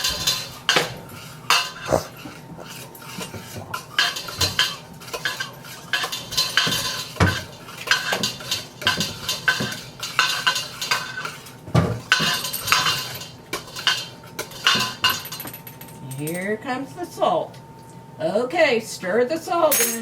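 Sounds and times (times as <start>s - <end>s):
spoons clinking against bowl: 4.0s - 16.5s, 19.7s - 20.0s.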